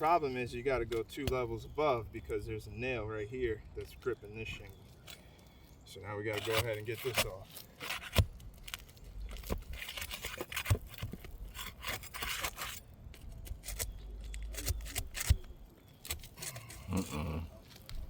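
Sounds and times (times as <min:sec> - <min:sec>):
shingle scraping and tearing: 0:03.7 - 0:18.0.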